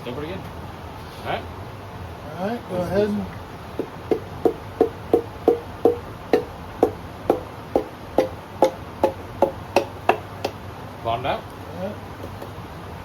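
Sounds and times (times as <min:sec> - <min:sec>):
piston tapped into cylinder: 0:03.8 - 0:10.6, 0:12.2 - 0:12.6
short ringing knocks: 0:03.8 - 0:10.6.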